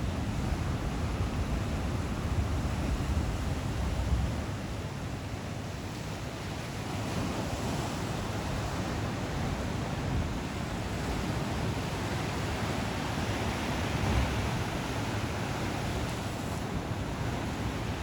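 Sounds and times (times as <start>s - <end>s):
ocean surf washing onto shore: 0.0s - 18.0s.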